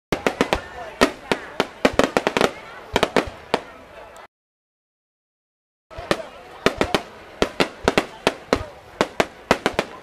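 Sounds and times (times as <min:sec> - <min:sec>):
fireworks bangs with echo: 0:00.1 - 0:03.8, 0:05.9 - 0:10.0.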